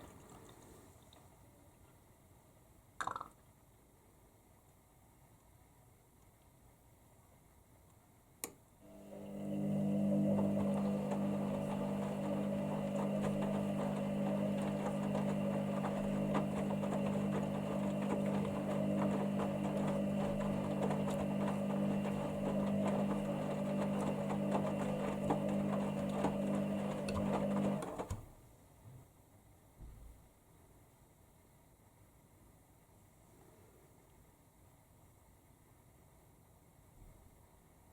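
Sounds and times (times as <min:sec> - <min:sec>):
washing machine motor hum: 0:08.8 - 0:28.4.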